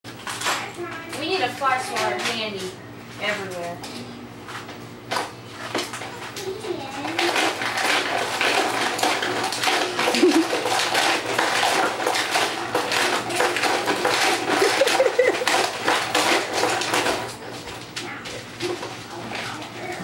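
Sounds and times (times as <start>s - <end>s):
hard objects clattering and banging: 4.7s - 20.0s.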